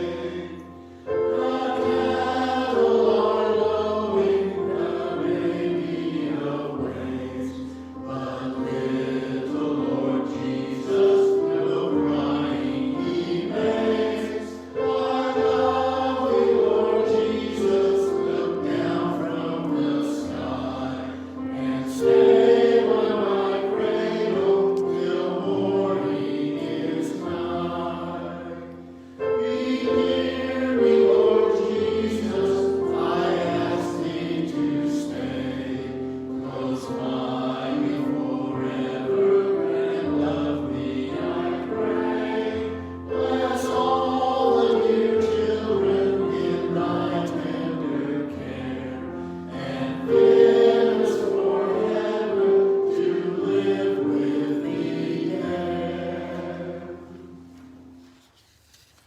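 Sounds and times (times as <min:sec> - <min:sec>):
choir singing: 0:00.0 - 0:58.3.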